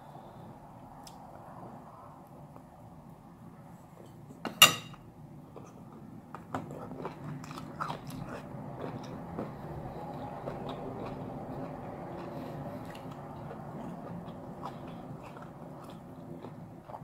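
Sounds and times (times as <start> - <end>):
biting and chewing: 6.4 - 17.0.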